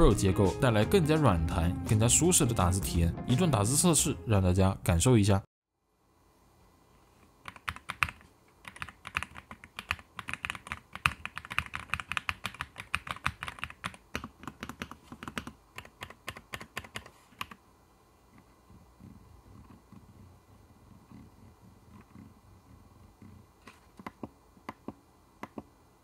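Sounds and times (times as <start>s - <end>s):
typing on mechanical keyboard: 7.4s - 17.6s.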